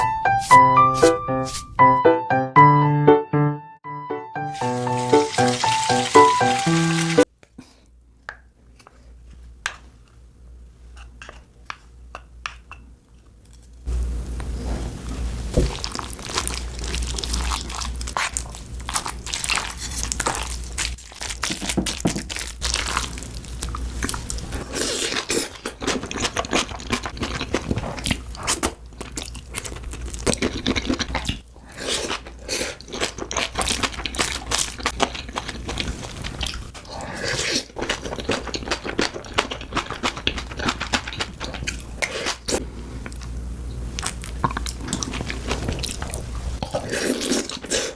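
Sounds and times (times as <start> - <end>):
crunchy biting and chewing: 15.6 - 43.4, 44.0 - 47.9.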